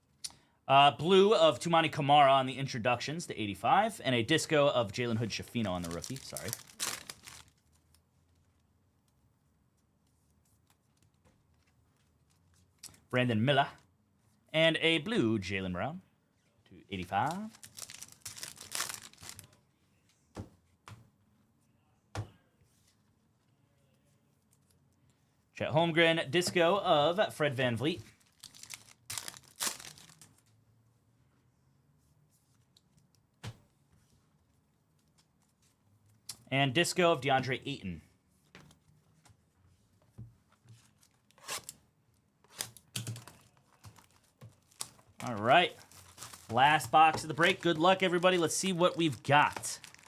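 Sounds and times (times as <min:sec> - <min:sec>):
cards rustling: 0:05.1 - 0:08.0, 0:17.0 - 0:19.6, 0:27.8 - 0:30.5, 0:42.5 - 0:50.0
packaging rasps: 0:05.7 - 0:07.6, 0:17.2 - 0:19.5, 0:28.2 - 0:30.3, 0:44.0 - 0:50.0.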